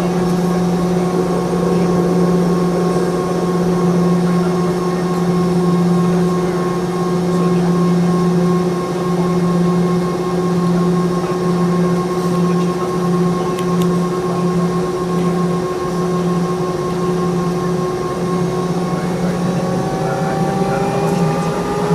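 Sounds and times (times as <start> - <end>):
jet engine cabin drone: 0.0 - 21.9.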